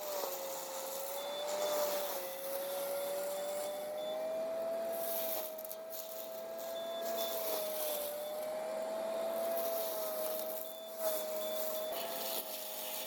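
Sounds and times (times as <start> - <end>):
faint high beeping: 10.2 - 12.6.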